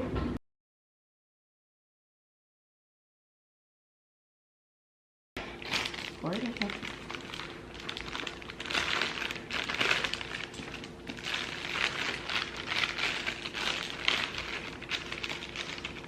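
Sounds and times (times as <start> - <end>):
plastic pouch crinkling: 5.6 - 16.0.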